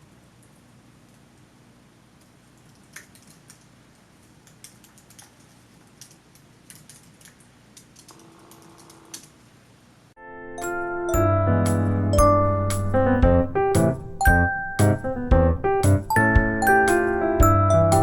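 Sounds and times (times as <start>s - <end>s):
light clicks and taps: 2.2s - 8.2s.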